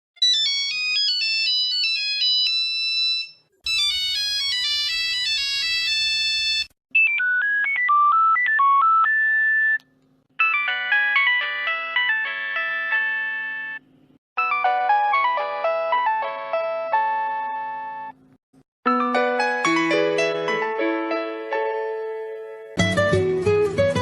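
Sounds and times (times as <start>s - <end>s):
electronic phone ringtone melodies: 0.2s - 9.8s, 10.4s - 13.8s, 14.4s - 18.2s.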